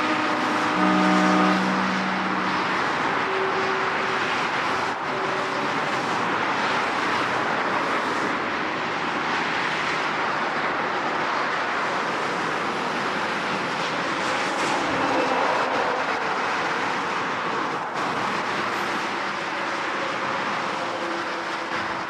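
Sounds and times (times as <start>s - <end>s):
heavy road traffic: 0.0s - 22.0s.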